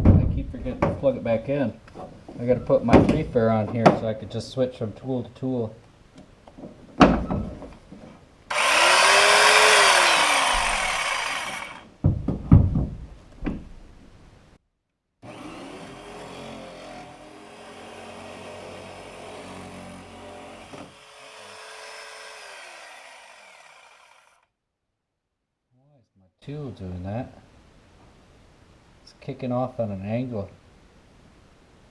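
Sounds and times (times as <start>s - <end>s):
electric jigsaw cutting wood: 8.5s - 11.9s, 15.2s - 24.5s
knocks: 12.0s - 13.8s.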